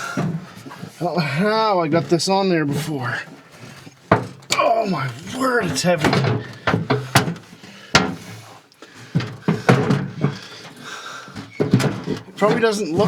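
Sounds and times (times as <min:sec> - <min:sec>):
sheet-metal hood clunking: 0:03.6 - 0:13.0
sharp knocks: 0:06.0 - 0:08.3.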